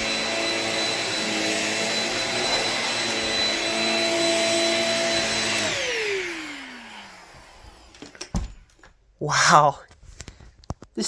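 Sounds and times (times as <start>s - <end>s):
vacuum motor whining: 0.0s - 8.3s.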